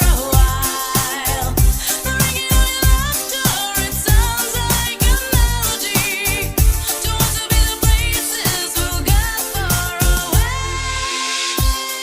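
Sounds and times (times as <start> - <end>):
kick-drum beat: 0.0 - 3.2, 4.0 - 10.6, 11.6 - 11.8
dance-pop music: 0.0 - 12.0.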